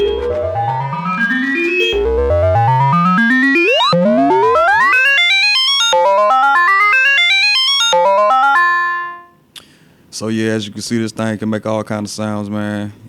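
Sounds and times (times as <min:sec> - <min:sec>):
synthesizer pitch sweeps: 0:00.0 - 0:09.2
synthesizer sequence of short notes: 0:00.0 - 0:09.2.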